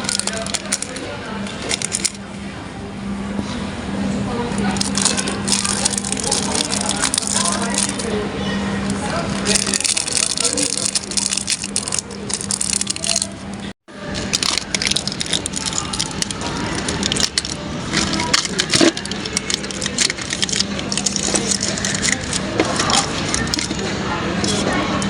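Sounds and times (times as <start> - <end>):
rustling and crinkling: 9.4 - 23.8.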